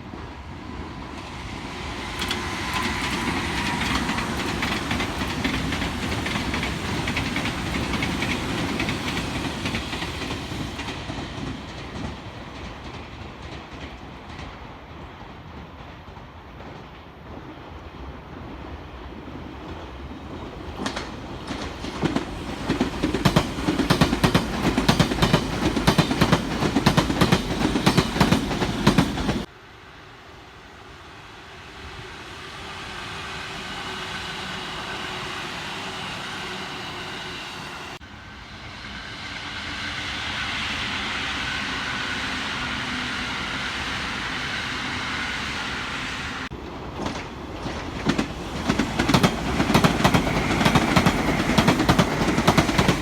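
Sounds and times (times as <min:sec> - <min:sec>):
train running with high whine: 0:00.0 - 0:53.0
train wheels clattering over rail joints: 0:02.0 - 0:14.6, 0:20.7 - 0:29.5, 0:46.9 - 0:53.0.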